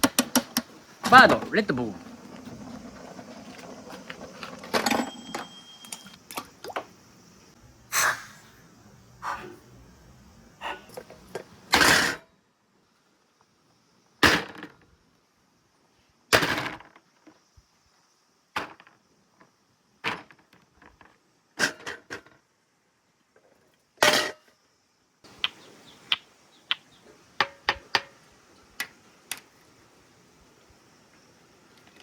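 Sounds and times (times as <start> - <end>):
faint steady whirr: 0.0 - 14.2.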